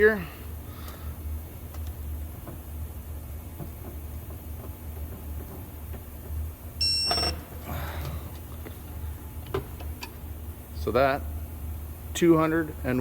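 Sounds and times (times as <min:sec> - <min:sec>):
torque wrench beep: 0:06.8 - 0:07.4.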